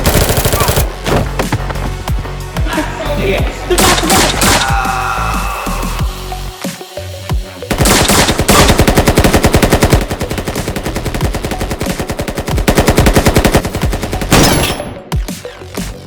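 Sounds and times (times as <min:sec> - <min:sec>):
rapid automatic gunfire: 0:00.0 - 0:00.9, 0:07.7 - 0:15.1.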